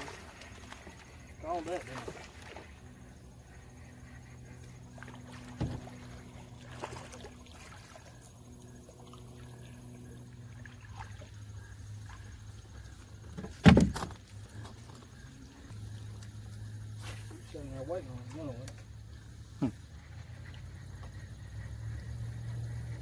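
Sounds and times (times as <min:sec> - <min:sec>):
steady low hum: 0:00.1 - 0:23.0
knocks on a canoe hull: 0:05.6 - 0:05.8, 0:13.4 - 0:14.2.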